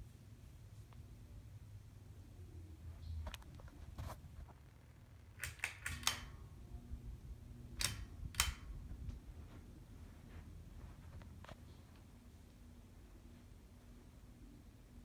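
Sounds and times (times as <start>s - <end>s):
ceiling fan humming: 0.0s - 15.0s
sharp mechanical clicks: 5.4s - 6.3s, 7.8s - 8.7s.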